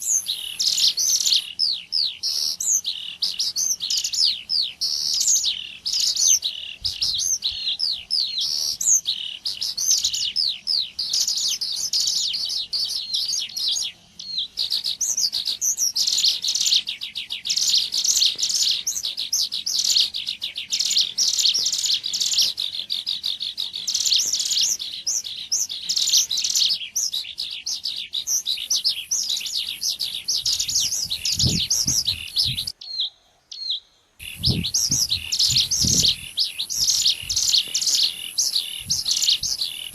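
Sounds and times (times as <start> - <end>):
bird chirps and trills: 0.0 - 39.9.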